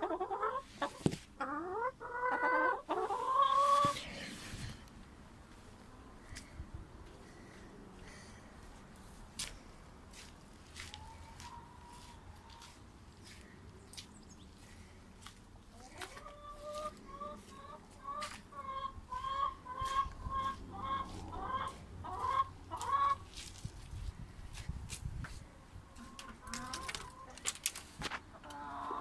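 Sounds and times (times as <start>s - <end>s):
chicken clucking: 0.0s - 4.0s, 10.8s - 14.6s, 15.3s - 23.4s, 25.7s - 29.0s.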